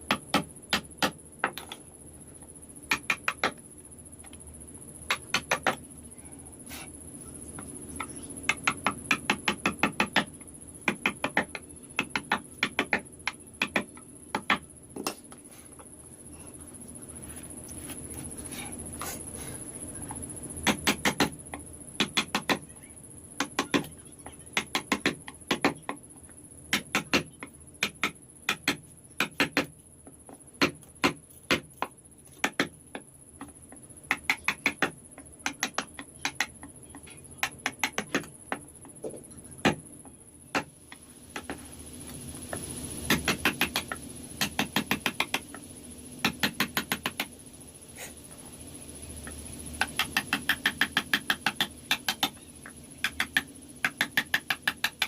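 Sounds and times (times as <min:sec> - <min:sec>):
faint high whine: 0:00.0 - 0:09.1, 0:13.2 - 0:20.7, 0:47.1 - 0:50.4.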